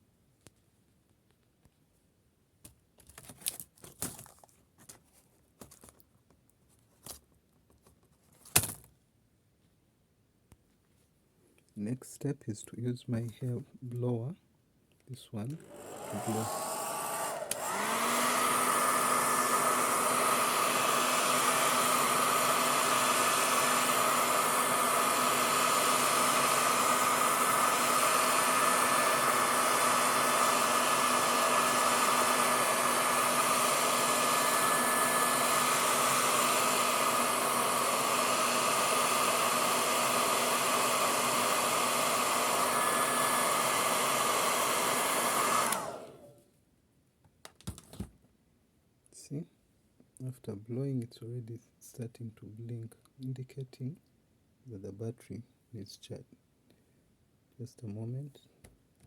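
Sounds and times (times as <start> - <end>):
hair dryer running: 15.5 - 46.4.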